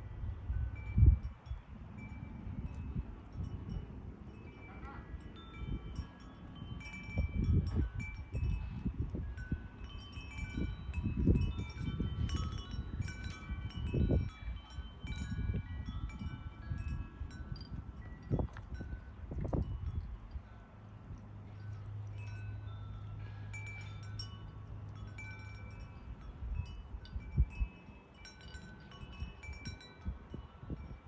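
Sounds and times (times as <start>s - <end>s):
wind rumble on microphone: 0.0s - 31.0s
wind chimes ringing: 0.2s - 31.0s.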